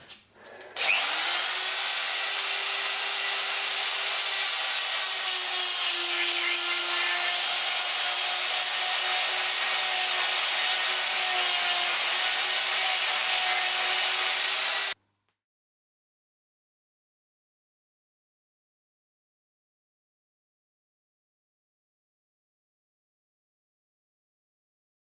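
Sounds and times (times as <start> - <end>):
die grinder grinding metal: 0.8 - 15.0.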